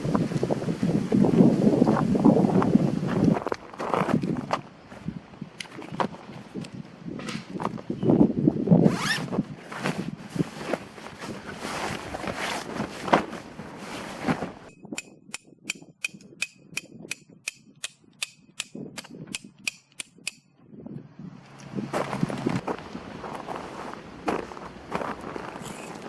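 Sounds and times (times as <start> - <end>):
rustling handling noise: 8.9 - 14.7
sharp metallic taps ringing: 14.9 - 20.5.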